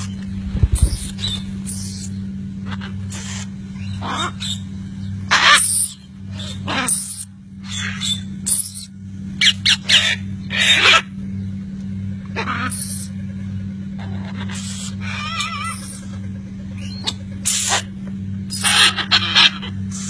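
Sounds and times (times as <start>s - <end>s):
steady low hum: 0.0s - 20.0s
parrots squawking: 0.7s - 4.7s, 5.3s - 11.2s, 12.3s - 13.2s, 14.0s - 16.2s, 16.8s - 17.9s, 18.5s - 20.0s.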